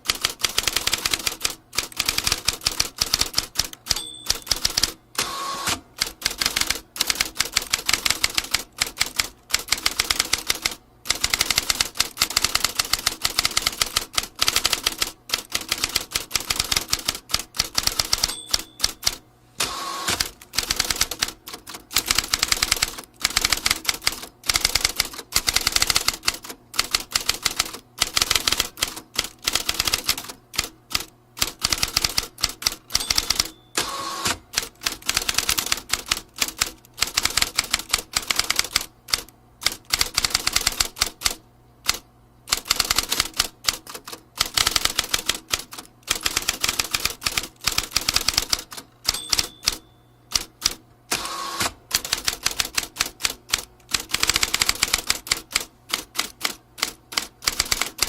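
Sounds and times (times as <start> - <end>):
typewriter keys striking: 0.0 - 5.0, 5.7 - 19.2, 20.1 - 51.2, 51.9 - 58.0.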